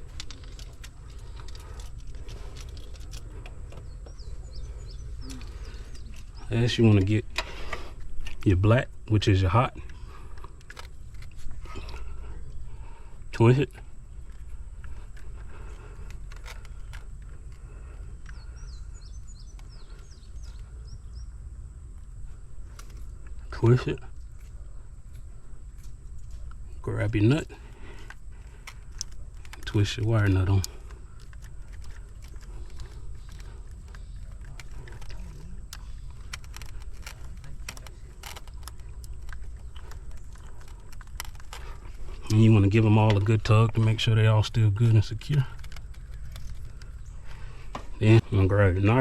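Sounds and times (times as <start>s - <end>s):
low outdoor rumble: 0.0s - 49.0s
low steady background: 0.0s - 49.0s
songbird chirping: 0.0s - 49.0s
wires and wire nuts clicking: 28.0s - 44.0s.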